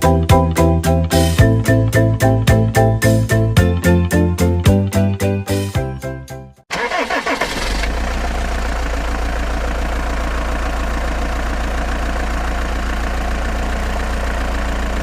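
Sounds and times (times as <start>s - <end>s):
engine cranking and idling: 6.7s - 15.0s.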